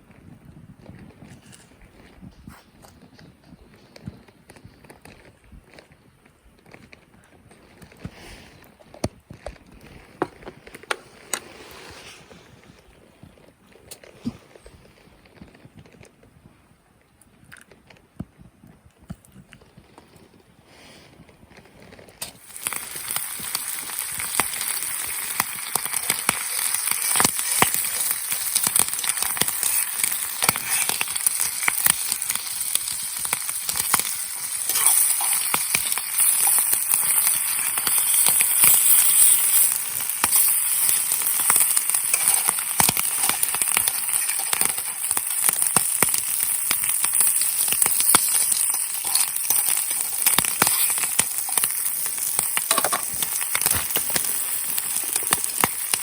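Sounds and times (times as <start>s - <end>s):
food sizzling in hot pan: 22.2s - 56.0s.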